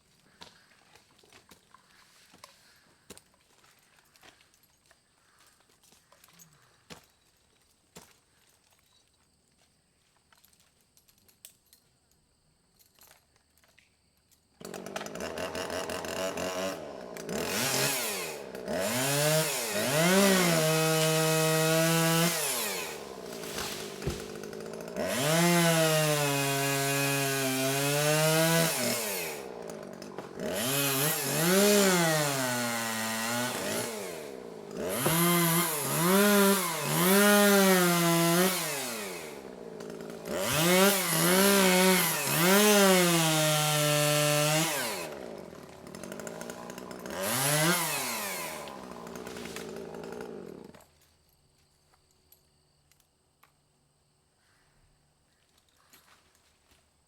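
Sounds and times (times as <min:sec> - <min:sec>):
chainsaw revving: 0:14.6 - 0:50.9.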